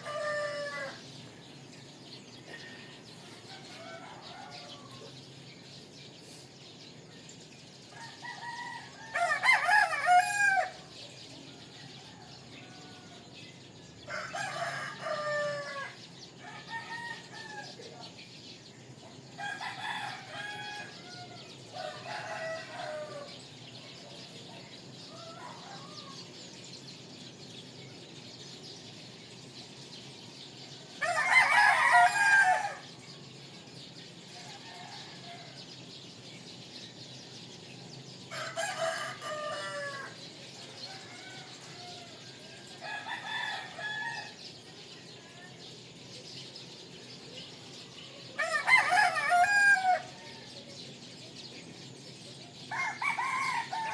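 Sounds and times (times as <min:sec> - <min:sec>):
rooster crowing: 0:00.0 - 0:01.0, 0:03.4 - 0:05.1, 0:07.9 - 0:10.8, 0:14.1 - 0:17.8, 0:19.4 - 0:23.4, 0:31.0 - 0:33.0, 0:34.4 - 0:35.6, 0:38.3 - 0:40.2, 0:40.8 - 0:44.4, 0:48.4 - 0:50.6, 0:52.7 - 0:53.9.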